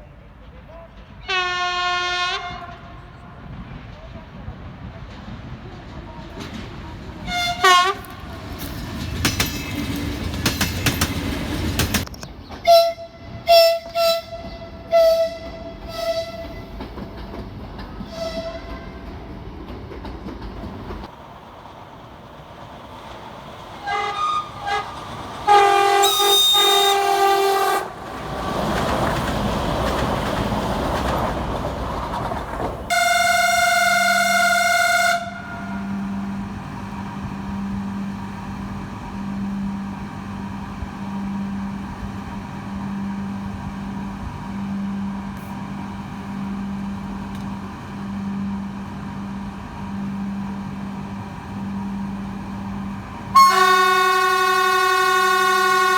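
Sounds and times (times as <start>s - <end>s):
train rumble and wheel clatter: 0.0s - 55.9s
train horn blasts: 1.2s - 3.4s, 7.2s - 8.3s, 12.6s - 16.7s, 18.0s - 19.0s, 23.8s - 28.0s, 32.9s - 36.4s, 53.3s - 55.9s.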